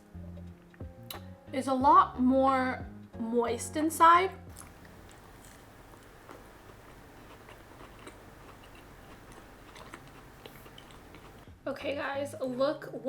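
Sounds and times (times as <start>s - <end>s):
soft chewing: 4.5s - 11.4s
wet mouth clicks: 4.5s - 11.4s.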